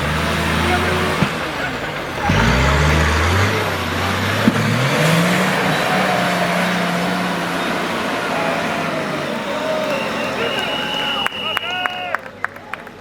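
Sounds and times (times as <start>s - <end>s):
engine revving hard: 0.0s - 11.4s.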